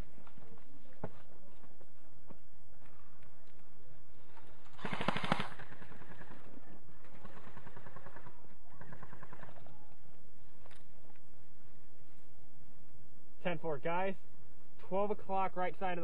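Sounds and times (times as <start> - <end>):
airsoft guns firing bursts: 4.8 - 6.4.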